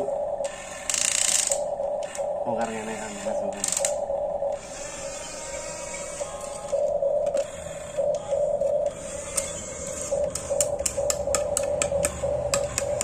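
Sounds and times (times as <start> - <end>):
small electric motors whining: 0.4 - 13.0
sharp clicks: 6.7 - 13.0.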